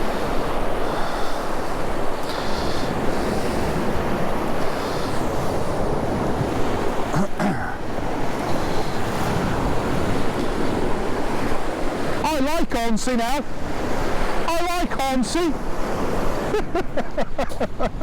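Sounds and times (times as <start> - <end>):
wind buffeting microphone: 0.0 - 7.2, 7.8 - 12.2
surf breaking on beach: 0.0 - 18.0.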